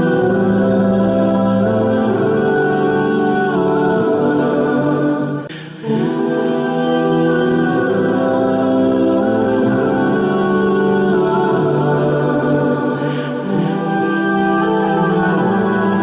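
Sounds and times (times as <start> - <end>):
wordless choir-like music: 0.0 - 16.0.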